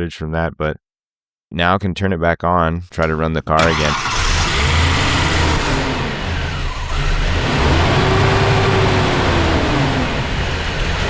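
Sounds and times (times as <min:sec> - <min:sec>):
engine running rough: 0:03.6 - 0:11.0.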